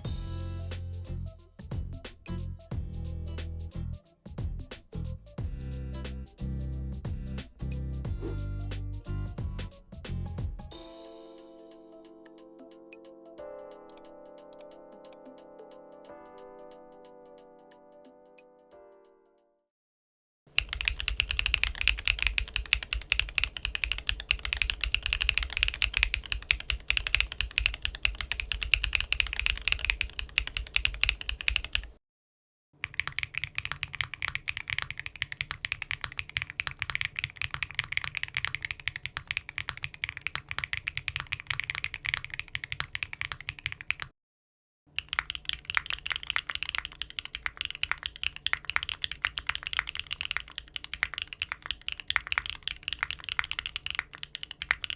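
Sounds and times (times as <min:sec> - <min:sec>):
mechanical keyboard typing: 0:20.5 - 0:32.0, 0:32.8 - 0:44.1, 0:45.0 - 0:54.9.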